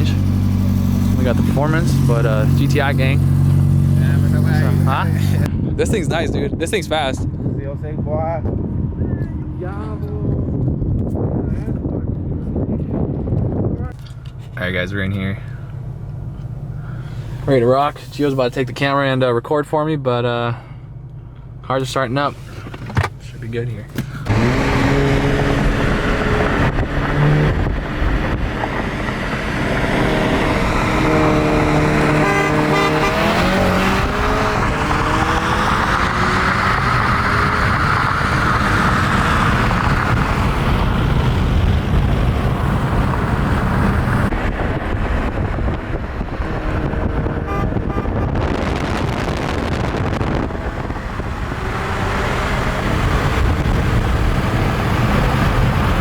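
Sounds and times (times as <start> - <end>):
car engines revving: 0.0 - 10.8, 14.0 - 56.0
road noise rush: 0.0 - 56.0.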